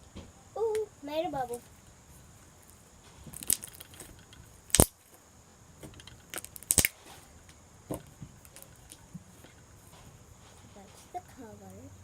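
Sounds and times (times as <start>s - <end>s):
slime clicking and popping: 4.7s - 4.9s, 6.4s - 6.9s.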